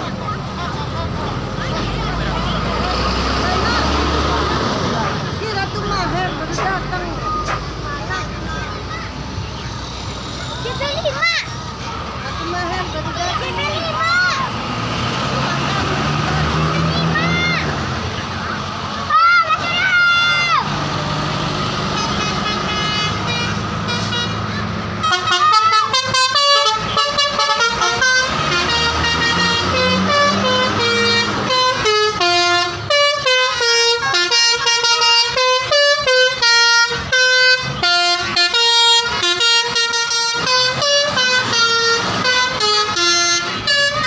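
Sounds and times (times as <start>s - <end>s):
engine rumble: 0.0s - 44.0s
bus horns playing a tune: 21.6s - 44.0s.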